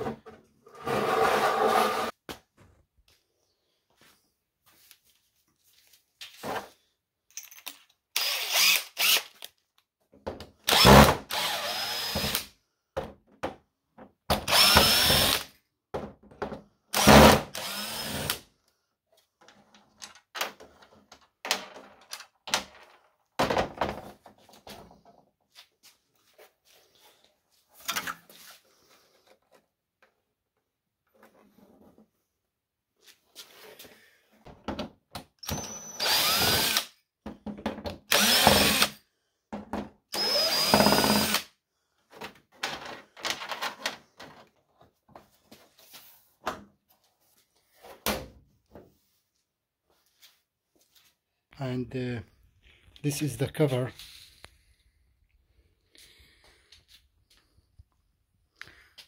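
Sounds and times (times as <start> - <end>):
power drill running: 8.2 - 9.4, 10.7 - 12.5, 14.4 - 15.5, 16.9 - 18.4, 35.4 - 36.9, 38.1 - 39.0, 40.1 - 41.5.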